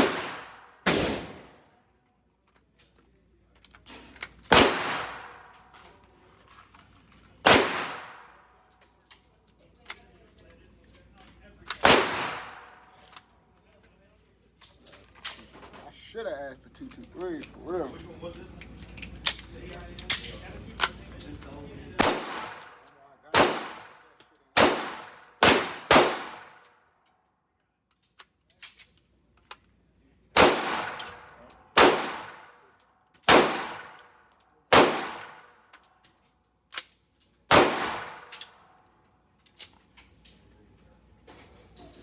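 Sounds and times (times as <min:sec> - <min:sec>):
loud gunshots with ringing echo: 0:00.0 - 0:01.6, 0:04.5 - 0:05.4, 0:07.4 - 0:08.3, 0:11.8 - 0:12.7, 0:22.0 - 0:24.0, 0:24.6 - 0:26.5, 0:30.4 - 0:31.0, 0:31.8 - 0:32.5, 0:33.3 - 0:34.0, 0:34.7 - 0:35.4, 0:37.5 - 0:38.3.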